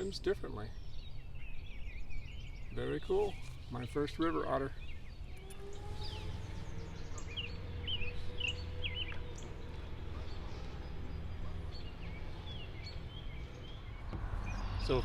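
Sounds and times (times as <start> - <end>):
birds chirping: 0.0 - 15.0
low outdoor rumble: 0.0 - 15.0.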